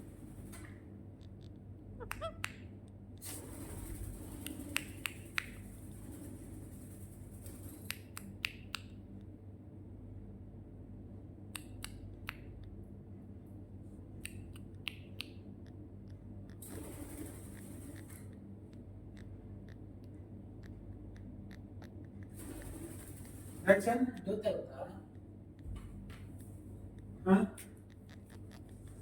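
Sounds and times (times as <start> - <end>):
low electrical hum: 0.0 - 29.0
parrot clicks and snaps: 0.5 - 3.0, 4.4 - 5.8, 7.8 - 9.3, 11.5 - 12.8, 14.2 - 16.8
squeaky chirps: 2.0 - 2.5, 27.9 - 29.0.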